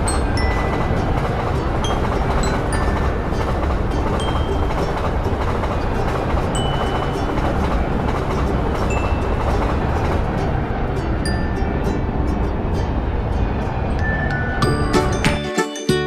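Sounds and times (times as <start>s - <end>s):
electric train rumbling past: 0.0s - 15.4s.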